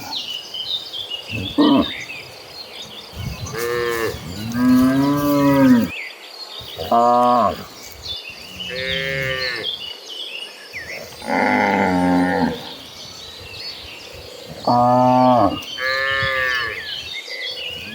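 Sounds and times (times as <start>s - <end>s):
cattle mooing: 3.5s - 5.9s, 8.6s - 9.7s, 14.5s - 16.8s.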